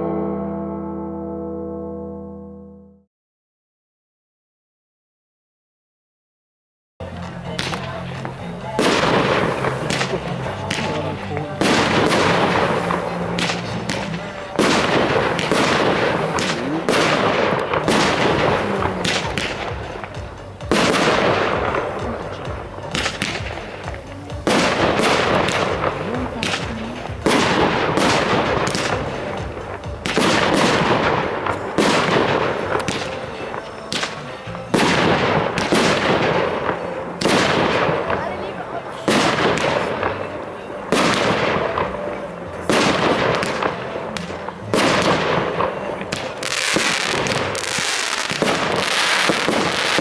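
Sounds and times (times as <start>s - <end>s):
firework bangs: 7.0s - 50.0s
firework hiss: 42.8s - 50.0s.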